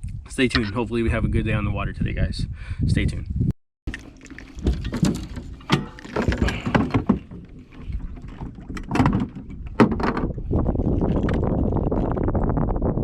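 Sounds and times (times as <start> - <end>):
knocks and bumps in boat: 3.9 - 12.6.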